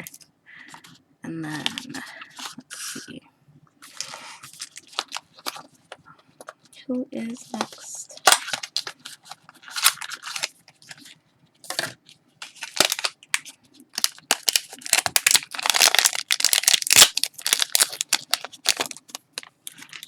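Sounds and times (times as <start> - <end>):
packaging torn and crinkled: 8.2 - 11.0, 11.7 - 20.0.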